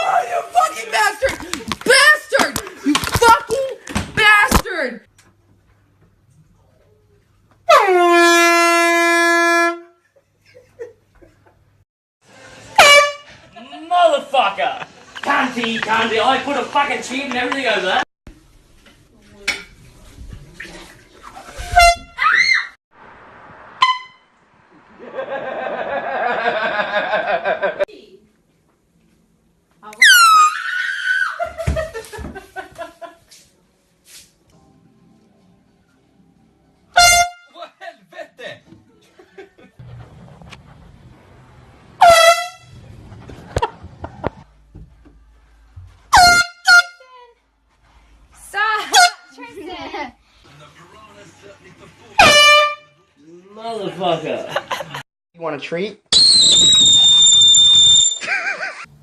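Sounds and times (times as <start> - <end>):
air horn blasts: 7.7 - 10.0, 12.7 - 13.5, 23.7 - 24.3, 36.9 - 37.6, 42.0 - 42.8, 46.1 - 47.1, 48.9 - 49.3, 52.2 - 53.0.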